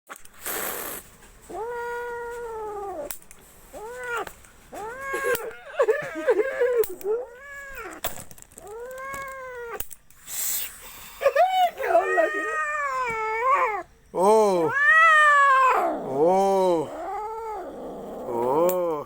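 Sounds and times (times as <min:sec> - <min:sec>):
cat hissing: 0:00.4 - 0:06.1
cat yowling: 0:01.5 - 0:03.1, 0:03.7 - 0:08.0, 0:08.6 - 0:09.8, 0:11.8 - 0:13.9, 0:14.5 - 0:18.6.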